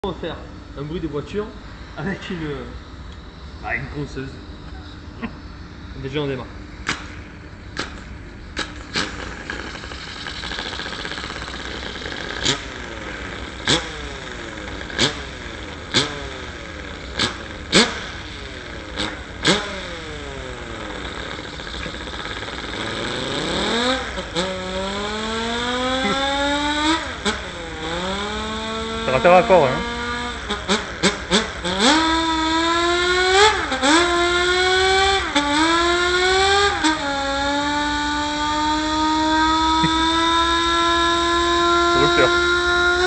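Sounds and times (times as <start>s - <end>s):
electric sander motor whining: 8.6s - 43.0s.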